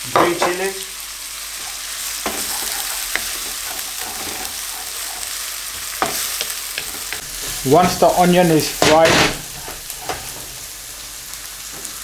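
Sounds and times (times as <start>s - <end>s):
onions sizzling in oil: 0.0s - 12.0s
utensil tapping pan: 4.8s - 10.7s.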